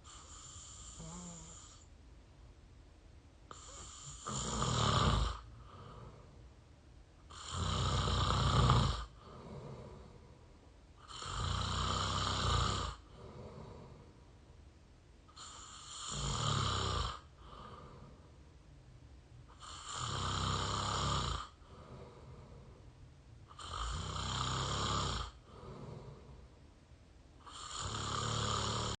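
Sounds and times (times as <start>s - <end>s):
person snoring: 0.0s - 1.9s, 3.5s - 6.4s, 7.3s - 10.4s, 11.0s - 14.1s, 15.3s - 18.3s, 19.5s - 22.7s, 23.5s - 26.4s, 27.4s - 29.0s
quiet breaths: 0.0s - 29.0s.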